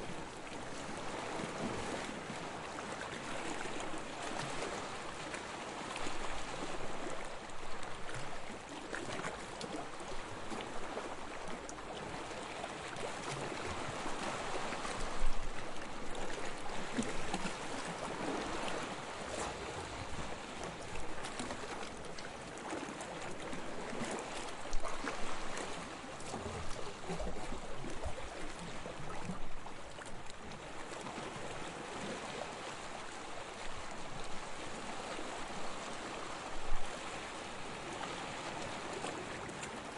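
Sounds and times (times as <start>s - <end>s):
sea water lapping: 0.0s - 39.9s.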